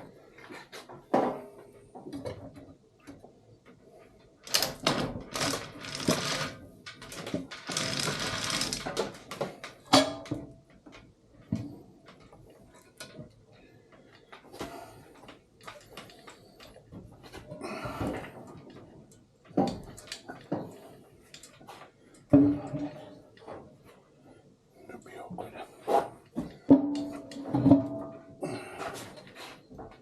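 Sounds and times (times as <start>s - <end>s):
rapid rattling: 4.5s - 9.3s.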